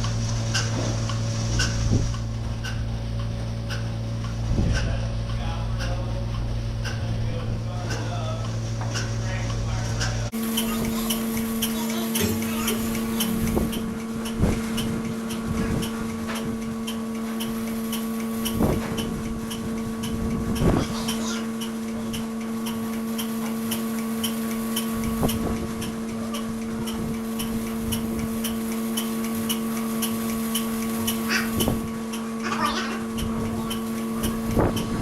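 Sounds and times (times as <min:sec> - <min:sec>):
machine humming: 0:00.0 - 0:35.0.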